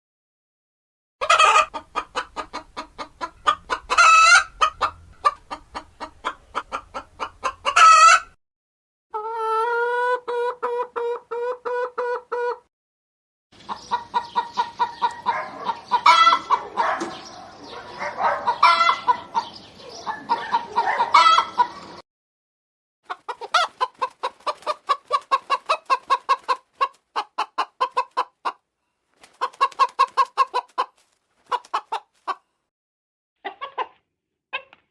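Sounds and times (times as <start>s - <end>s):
hen cackling: 1.2s - 8.4s, 9.1s - 12.7s, 13.7s - 22.0s, 23.1s - 28.6s, 29.4s - 32.4s
hens clucking: 1.2s - 8.4s, 9.1s - 12.7s, 13.6s - 22.0s, 23.1s - 28.6s, 29.2s - 32.4s, 33.4s - 34.8s.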